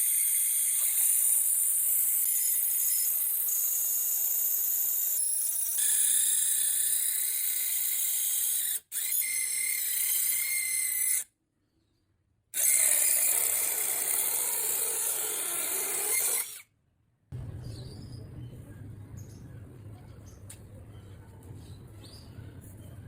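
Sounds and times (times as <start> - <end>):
power tool whining on wood: 0.0 - 11.2, 12.6 - 16.6.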